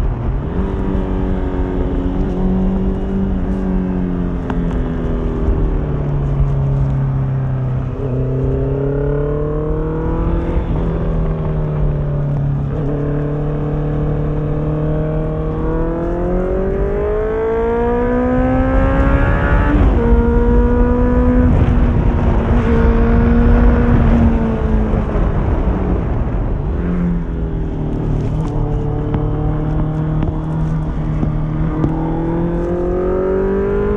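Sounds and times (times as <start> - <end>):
motorcycle accelerating through gears: 0.0 - 33.9.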